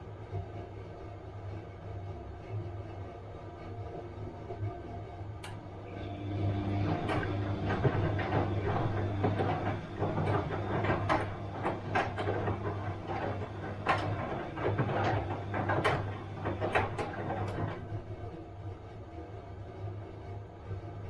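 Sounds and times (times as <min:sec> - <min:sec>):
washing machine humming: 0:00.0 - 0:21.0
washing machine drum knocking: 0:06.0 - 0:18.0.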